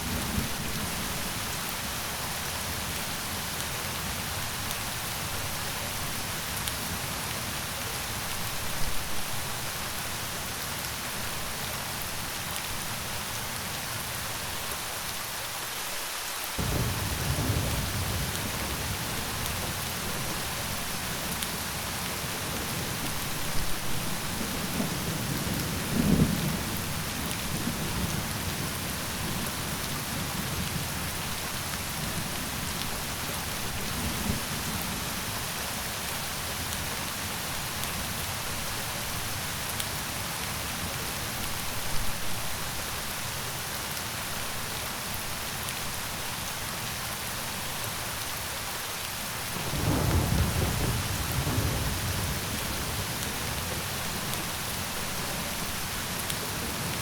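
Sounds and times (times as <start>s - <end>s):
steady rain: 0.0s - 57.0s
thunder rumbling: 16.6s - 21.1s, 49.6s - 54.3s.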